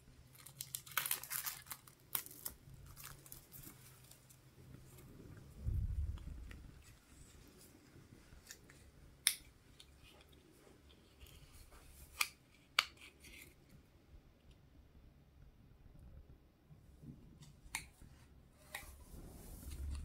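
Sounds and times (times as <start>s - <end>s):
packaging rustle: 0.3s - 5.0s
toy packaging clicks: 0.4s - 3.5s.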